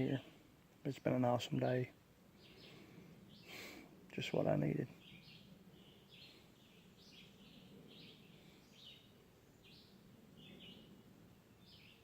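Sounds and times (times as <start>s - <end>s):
songbird high chirps: 2.3s - 3.6s, 4.2s - 12.0s.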